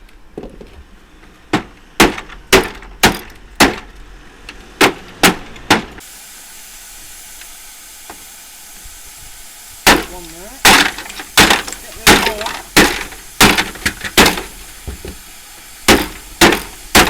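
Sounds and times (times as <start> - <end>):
faint steady hiss: 0.0 - 17.0.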